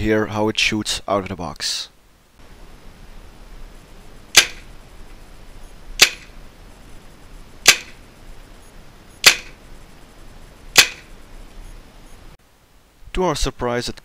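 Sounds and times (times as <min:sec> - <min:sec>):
airsoft rifle shots: 0:04.3 - 0:04.7, 0:06.0 - 0:06.4, 0:07.6 - 0:08.0, 0:09.2 - 0:09.6, 0:10.7 - 0:11.1.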